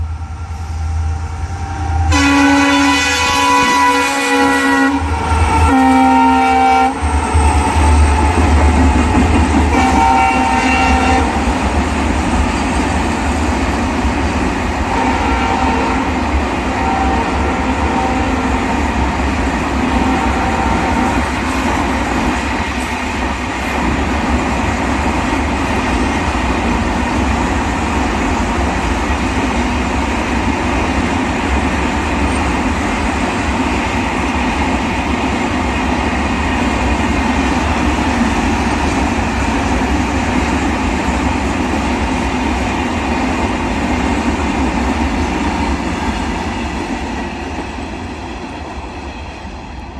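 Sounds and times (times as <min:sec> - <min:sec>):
train wheels rumbling on rail: 0:00.0 - 0:49.9
train horn: 0:00.5 - 0:08.1, 0:09.7 - 0:11.6, 0:14.9 - 0:18.9, 0:19.8 - 0:21.9.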